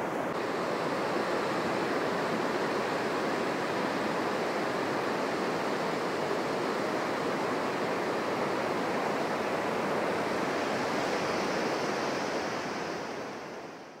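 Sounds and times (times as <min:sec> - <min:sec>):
ocean surf breaking on beach: 0:00.0 - 0:14.0.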